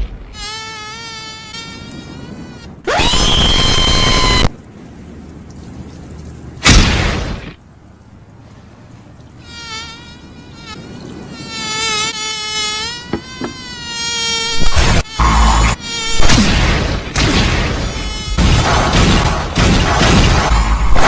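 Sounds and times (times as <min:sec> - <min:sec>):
insect-like buzzing whine: 0:00.0 - 0:04.5, 0:09.4 - 0:16.5, 0:17.8 - 0:18.4
harsh noisy blasts: 0:14.6 - 0:21.0.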